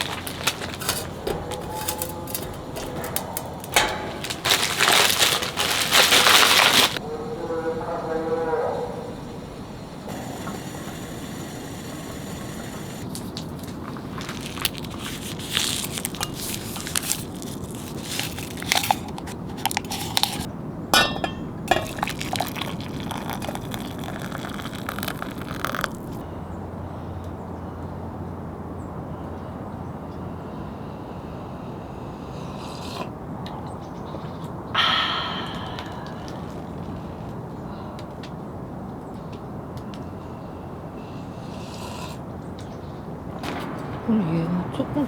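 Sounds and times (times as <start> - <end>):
dishes and utensils clinking: 0.0 - 7.0, 15.8 - 26.2.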